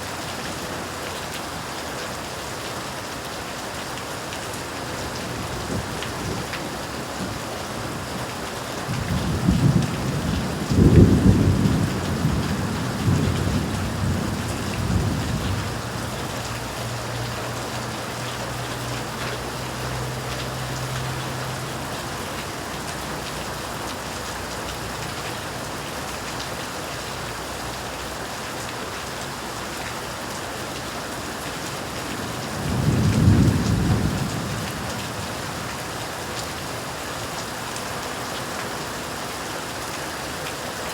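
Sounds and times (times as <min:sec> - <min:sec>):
heavy rain falling: 0:00.0 - 0:40.9
rolling thunder: 0:08.9 - 0:16.5, 0:32.2 - 0:35.8.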